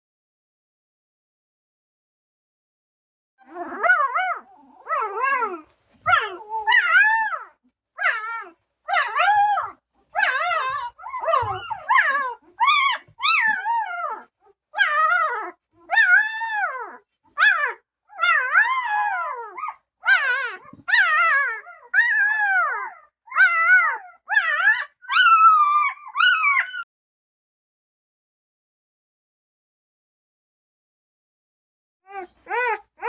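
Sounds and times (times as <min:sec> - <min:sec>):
puppies squealing: 0:10.2 - 0:13.6, 0:24.4 - 0:26.8, 0:32.1 - 0:33.0.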